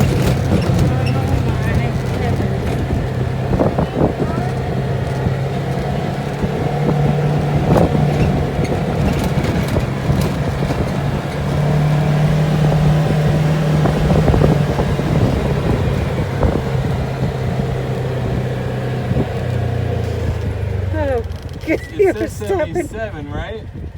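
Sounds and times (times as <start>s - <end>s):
knocks and rattles: 0.0s - 17.3s
engine running: 0.0s - 23.9s.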